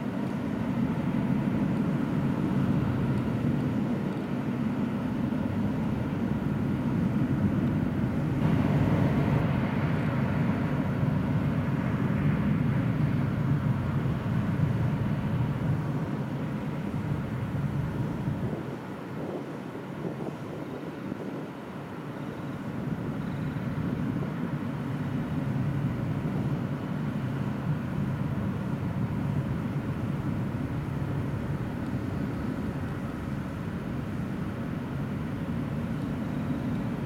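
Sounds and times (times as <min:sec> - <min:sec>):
jet engine rumbling: 0:00.0 - 0:19.9.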